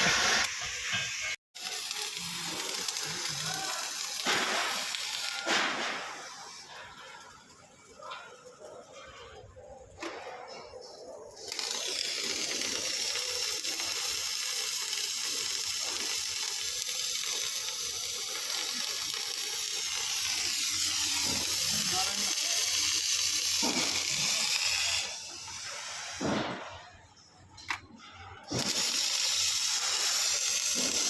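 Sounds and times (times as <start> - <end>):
gas cutting torch hissing: 0.0 - 9.4, 10.9 - 26.9, 28.4 - 31.0.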